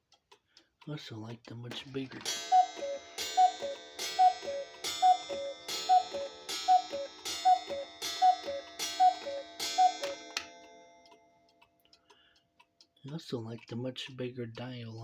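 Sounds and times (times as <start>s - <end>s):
clock ticking: 0.0s - 15.0s
cuckoo clock calls: 2.3s - 10.6s.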